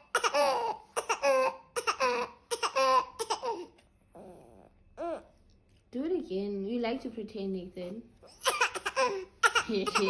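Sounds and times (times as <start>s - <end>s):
baby pretend coughing: 0.0s - 3.8s, 8.4s - 10.0s.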